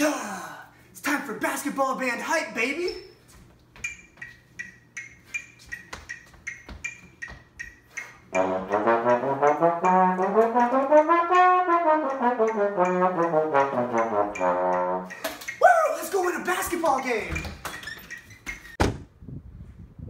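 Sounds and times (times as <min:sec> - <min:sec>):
steady ticking beat: 0:03.6 - 0:18.3
brass instrument sliding note: 0:08.3 - 0:15.2.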